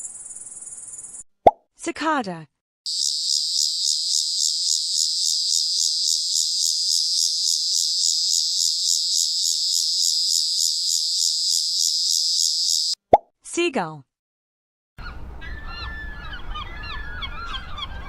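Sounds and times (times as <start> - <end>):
cicada buzzing: 2.9 - 13.0.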